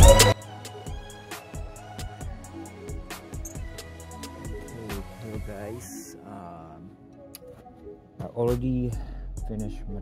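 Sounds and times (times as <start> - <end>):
regular drum hits: 0.0 - 5.5.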